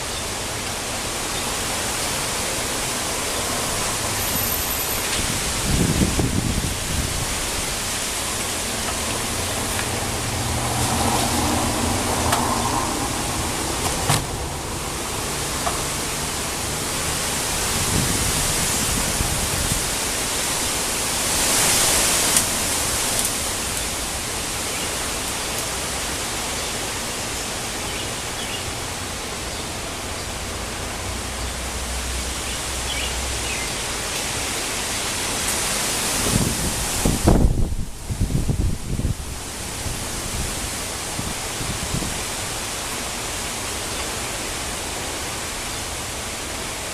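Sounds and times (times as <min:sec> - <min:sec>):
gusty wind: 0:00.0 - 0:43.8
rain: 0:00.0 - 0:46.9
wind buffeting microphone: 0:05.1 - 0:20.3, 0:36.1 - 0:42.4.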